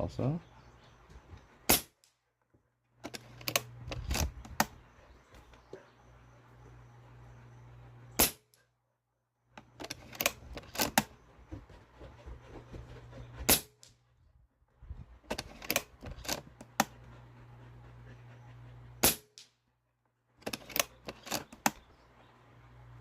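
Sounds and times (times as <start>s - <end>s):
air rifle shots: 8.2s - 8.5s.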